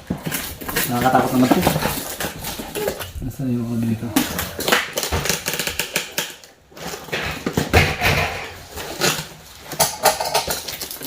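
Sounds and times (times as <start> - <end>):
packaging rustling: 0.0 - 11.0.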